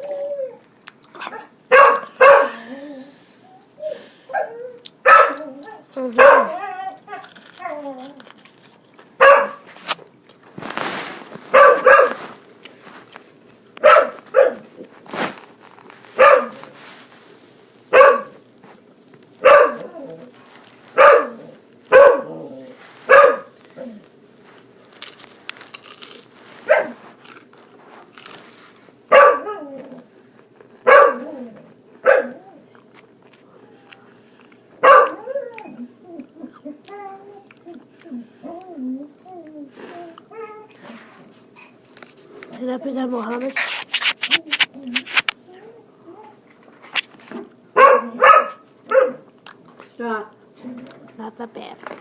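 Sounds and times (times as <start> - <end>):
dog barking: 1.2 - 2.6, 4.4 - 5.4, 6.2 - 7.2, 9.2 - 9.6, 11.5 - 12.2, 13.8 - 14.7, 16.2 - 16.7, 17.9 - 18.4, 19.4 - 19.9, 21.0 - 22.4, 23.1 - 23.5, 26.7 - 27.0, 29.1 - 29.6, 30.8 - 31.3, 32.0 - 32.4, 34.8 - 35.3, 47.8 - 49.3.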